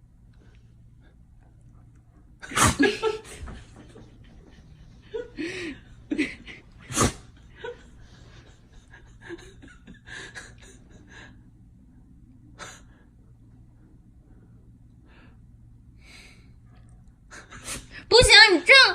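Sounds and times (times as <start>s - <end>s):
dog sneezing: 2.4s - 3.1s, 6.8s - 7.4s.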